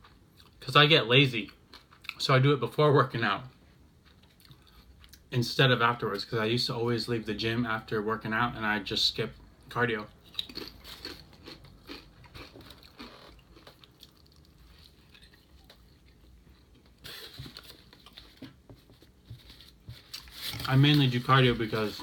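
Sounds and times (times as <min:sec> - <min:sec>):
person chewing food: 0:03.5 - 0:05.2, 0:10.2 - 0:21.0.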